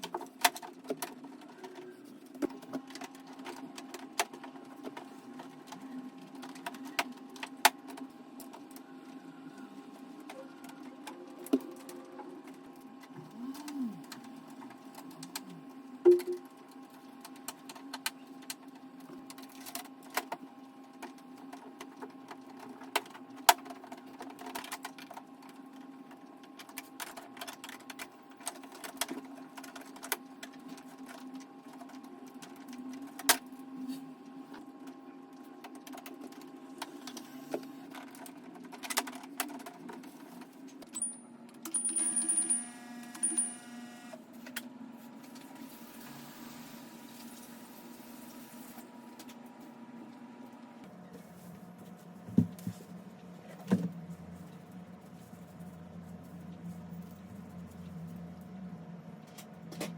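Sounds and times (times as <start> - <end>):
steady low hum: 48.8 - 59.9.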